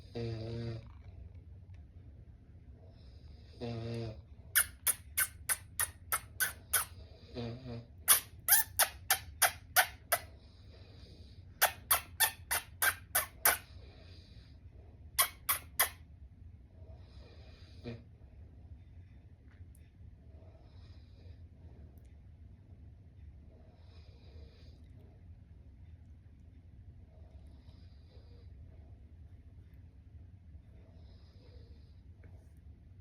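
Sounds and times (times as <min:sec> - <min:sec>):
short sharp squeaks: 0:04.6 - 0:07.0, 0:08.1 - 0:10.3, 0:11.6 - 0:13.7, 0:15.2 - 0:16.0.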